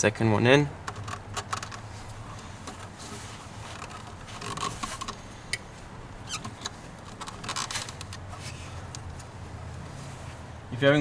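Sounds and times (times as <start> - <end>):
plastic and rubber parts scraping: 0.9 - 5.3, 6.2 - 9.3.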